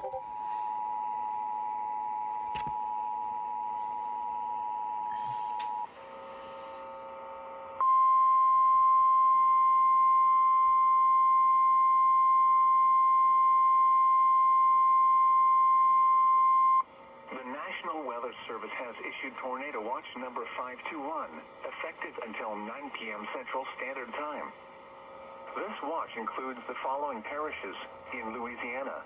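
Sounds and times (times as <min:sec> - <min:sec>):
single-pitch warning tone: 0:00.0 - 0:02.3.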